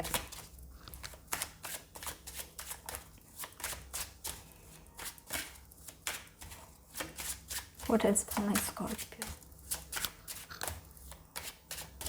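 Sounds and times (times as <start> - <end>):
cards being shuffled: 0.0 - 4.4.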